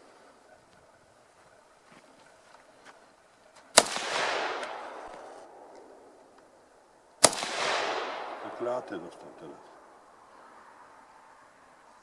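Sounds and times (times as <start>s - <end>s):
gunshots: 3.7s - 5.7s, 7.2s - 9.3s.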